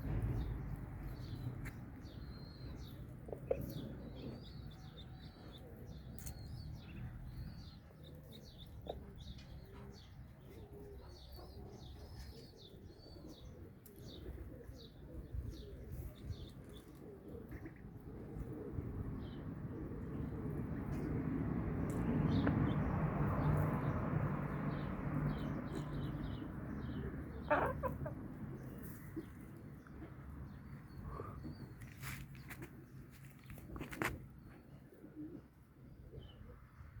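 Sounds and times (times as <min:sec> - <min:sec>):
pigeons cooing: 0:02.1 - 0:21.2, 0:25.3 - 0:32.6, 0:33.8 - 0:36.7
birds chirping: 0:22.0 - 0:35.4.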